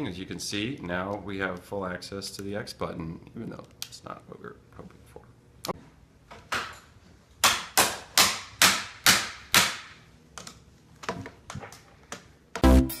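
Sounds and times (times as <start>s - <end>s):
electronic dance music: 12.6s - 13.0s.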